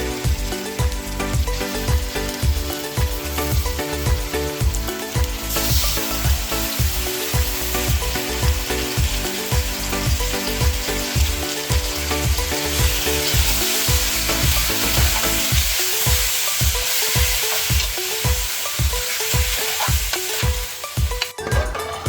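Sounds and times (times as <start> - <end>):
curry sizzling in a pan: 0.0 - 21.4
music with bass-drum beat: 0.0 - 22.0.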